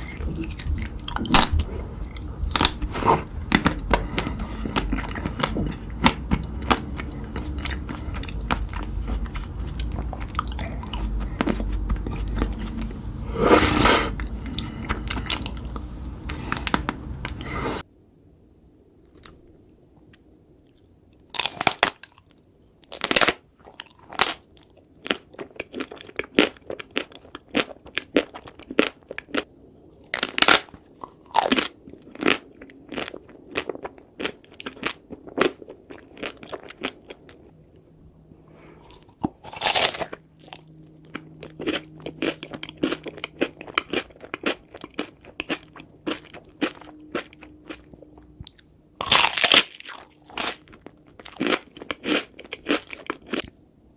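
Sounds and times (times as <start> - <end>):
crunchy chewing of ice cream: 0.0 - 17.8, 20.7 - 53.6.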